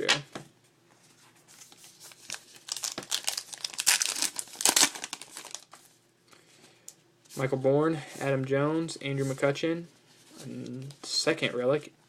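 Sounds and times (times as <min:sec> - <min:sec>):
foil wrapper tearing and crinkling: 0:02.0 - 0:05.8.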